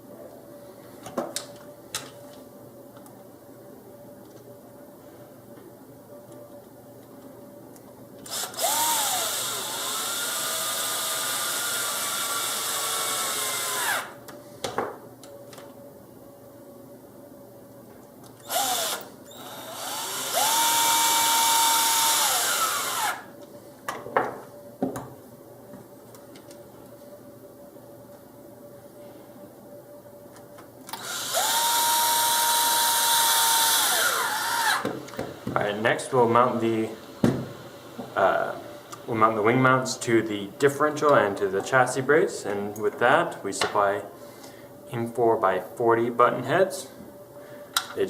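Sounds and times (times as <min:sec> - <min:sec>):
power driver motor whine: 0:08.2 - 0:14.2, 0:18.4 - 0:23.3, 0:30.9 - 0:35.6.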